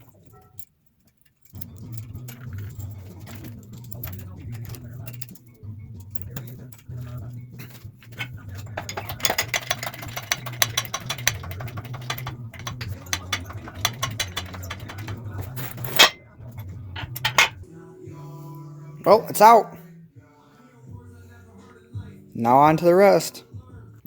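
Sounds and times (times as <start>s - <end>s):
tools clicking and clattering: 0.0s - 17.6s.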